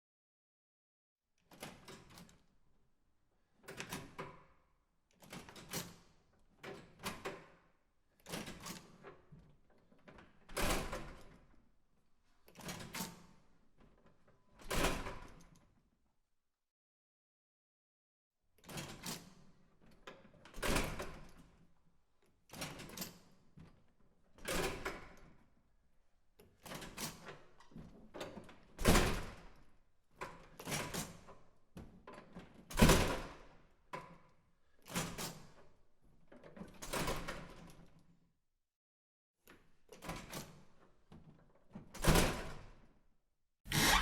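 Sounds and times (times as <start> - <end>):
door opening and shutting: 43.7 - 44.0.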